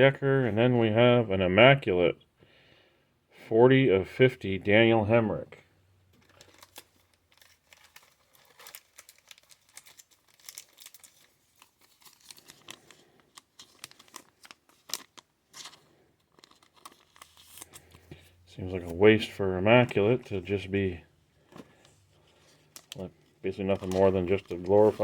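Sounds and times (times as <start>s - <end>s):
cards and plastic crinkling: 6.1s - 25.0s.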